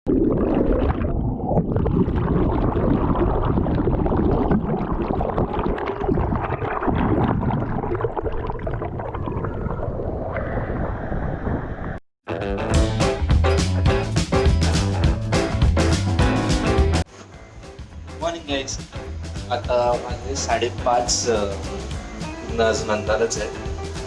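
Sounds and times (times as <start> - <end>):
wind on microphone: 1.3 - 12.0
music with a beat: 12.3 - 24.0
rushing water: 18.3 - 24.0.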